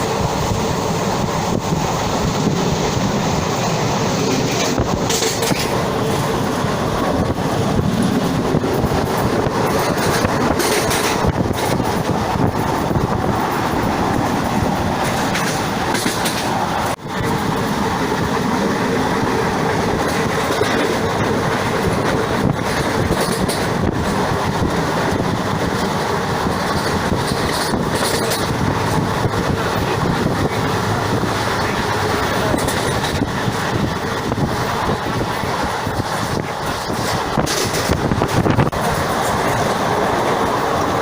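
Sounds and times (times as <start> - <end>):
train rumbling on track: 0.0 - 41.0
wheels clacking over rail joints: 0.0 - 41.0.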